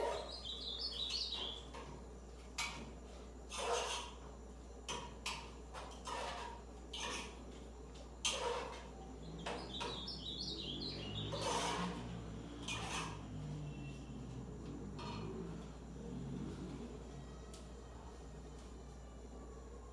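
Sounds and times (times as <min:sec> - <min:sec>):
bird singing whistled notes: 0:00.2 - 0:01.7, 0:09.6 - 0:11.4.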